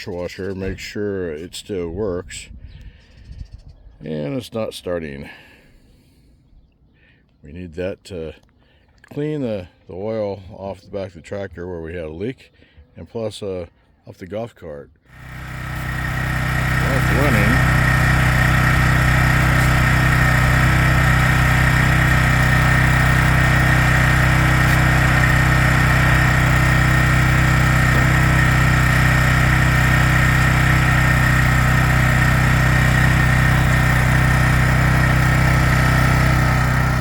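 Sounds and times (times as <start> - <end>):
pressure washer engine running: 15.1 - 37.0.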